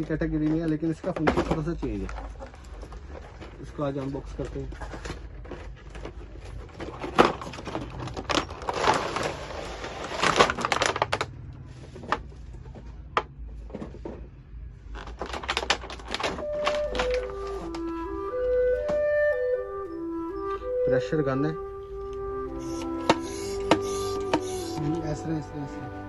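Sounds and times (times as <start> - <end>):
packaging clicks and knocks: 0.0 - 11.4, 14.9 - 19.3, 22.2 - 24.8
plastic and cardboard rustling: 0.0 - 19.5
simple melody of held notes: 16.5 - 26.0.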